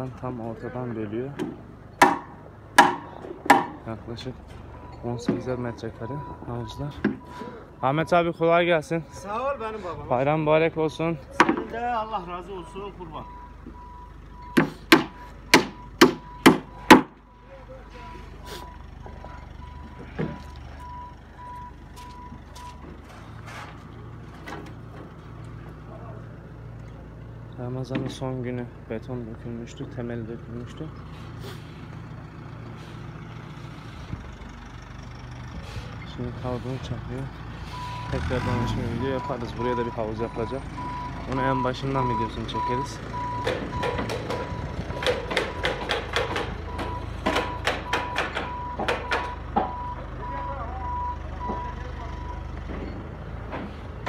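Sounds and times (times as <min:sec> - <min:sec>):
vehicle engine running: 0:00.0 - 0:54.0
reversing alarm beeping: 0:04.7 - 0:10.0, 0:12.0 - 0:22.9, 0:37.6 - 0:45.8, 0:46.6 - 0:53.0
paving stones being tapped: 0:43.4 - 0:49.7.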